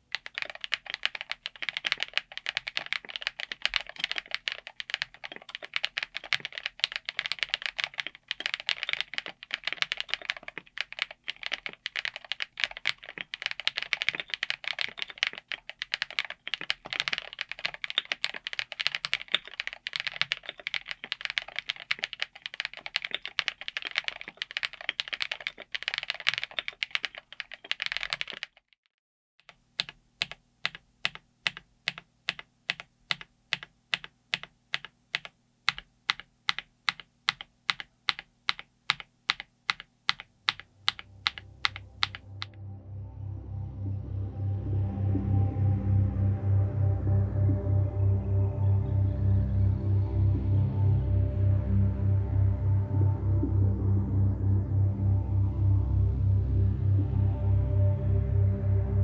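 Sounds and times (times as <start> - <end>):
typing on mechanical keyboard: 0.0 - 28.8, 29.4 - 42.5.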